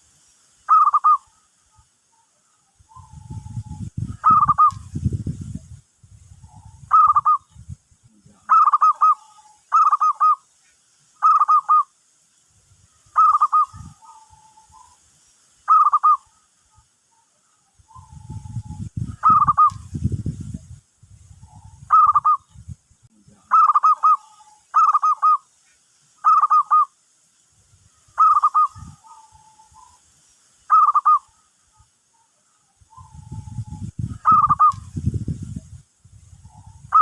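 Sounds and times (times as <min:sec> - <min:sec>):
dove rippling coo calls: 0:00.7 - 0:05.5, 0:06.3 - 0:07.5, 0:08.4 - 0:10.4, 0:11.2 - 0:11.9, 0:13.1 - 0:15.0, 0:15.6 - 0:20.4, 0:21.3 - 0:22.5, 0:23.4 - 0:25.5, 0:26.2 - 0:26.9, 0:28.1 - 0:30.0, 0:30.7 - 0:35.1, 0:36.4 - 0:37.0.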